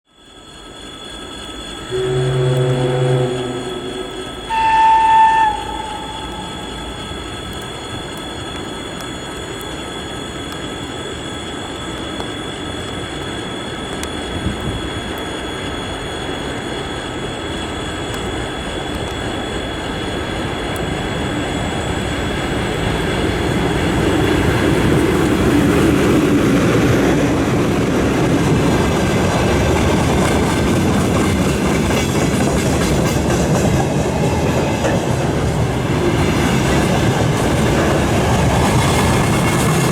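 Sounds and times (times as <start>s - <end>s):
freight train running: 0.1s - 39.9s
locomotive horn note: 1.9s - 7.1s.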